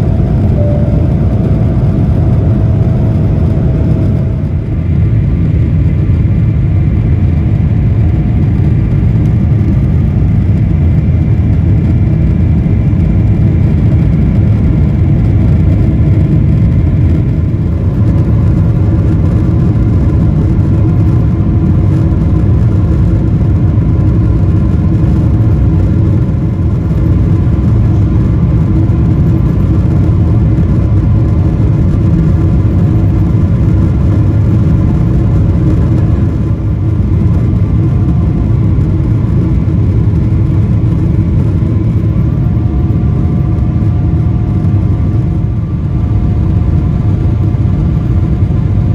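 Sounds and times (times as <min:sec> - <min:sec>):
jet engine whining tones: 0:00.0 - 0:08.1
jet engine cabin rumble: 0:00.0 - 0:48.9.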